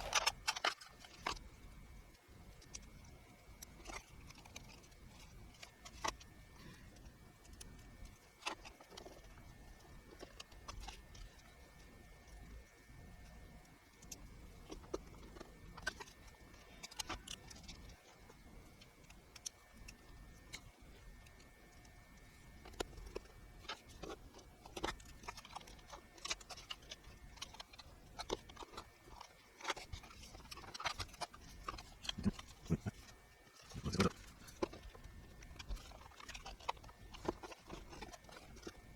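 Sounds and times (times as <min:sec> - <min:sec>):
hands handling computer parts: 0:00.0 - 0:01.5, 0:14.0 - 0:21.8, 0:22.6 - 0:38.9
low steady hum: 0:00.0 - 0:38.9.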